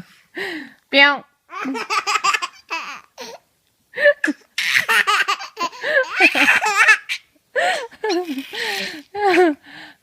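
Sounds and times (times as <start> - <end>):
baby laughing: 1.5 - 3.4, 4.2 - 9.5.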